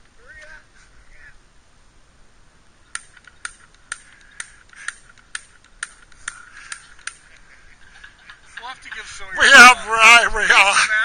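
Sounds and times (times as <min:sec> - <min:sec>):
spark igniter clicking: 0:02.9 - 0:07.5.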